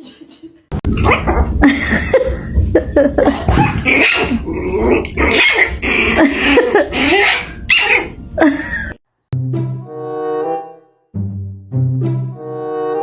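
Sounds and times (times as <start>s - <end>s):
dog vocalizing loudly: 3.4s - 8.1s.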